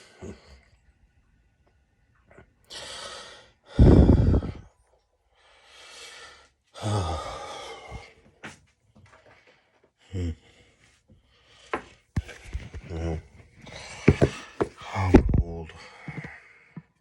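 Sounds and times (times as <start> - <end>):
man breathing heavily: 2.7 - 4.7, 5.3 - 17.0
man sighing exhale: 3.8 - 4.7.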